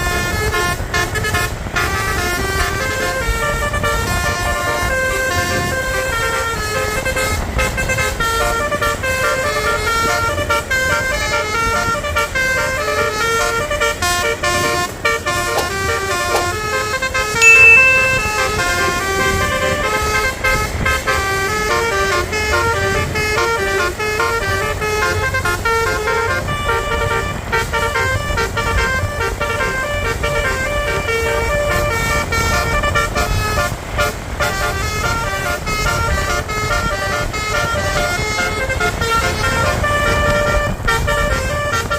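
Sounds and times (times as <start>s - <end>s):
engine and traffic rumble: 0.0s - 17.4s
shrill horn note: 17.4s - 18.9s.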